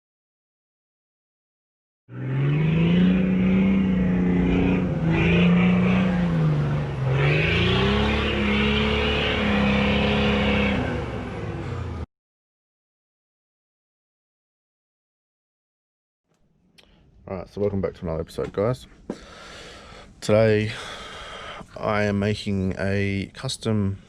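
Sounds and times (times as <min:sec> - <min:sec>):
car engine revving: 0:02.1 - 0:12.1.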